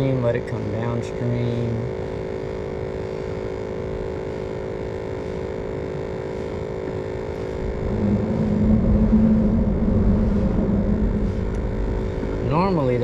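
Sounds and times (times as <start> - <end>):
steady hum: 0.0 - 13.0
vehicle rumbling over bridge: 7.6 - 13.0.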